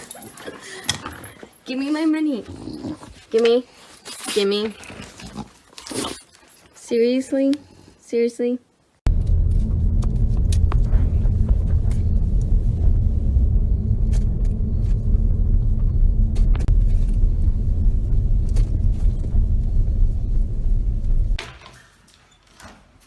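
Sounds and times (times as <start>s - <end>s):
vehicle engine rumble: 9.1s - 21.4s.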